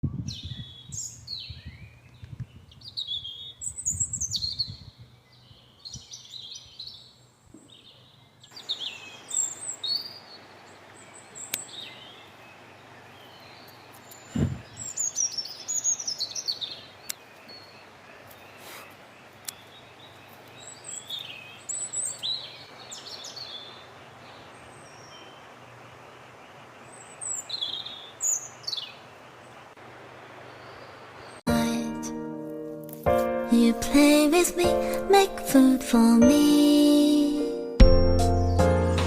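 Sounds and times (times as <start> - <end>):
birds singing and chirping: 0.1 - 29.6
outdoor hiss: 8.5 - 32.0
low thump: 37.8 - 38.5.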